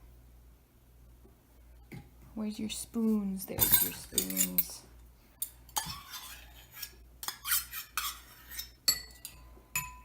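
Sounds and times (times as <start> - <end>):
spoons clinking against dishes: 3.6 - 4.8, 5.4 - 10.0.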